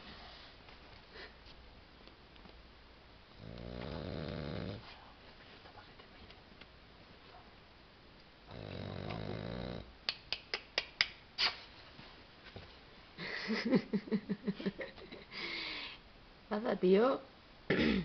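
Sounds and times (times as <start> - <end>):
dog snoring: 3.3 - 4.9, 8.5 - 9.9.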